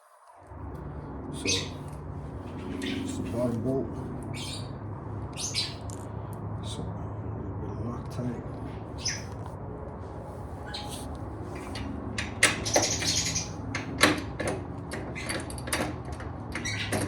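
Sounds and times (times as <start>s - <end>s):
steady low hum: 0.4s - 14.0s
metal hardware clicks and knocks: 13.7s - 17.0s.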